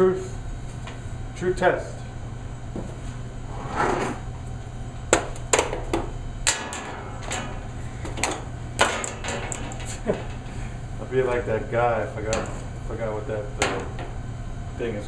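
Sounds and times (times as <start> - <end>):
short scrape: 3.5 - 4.2.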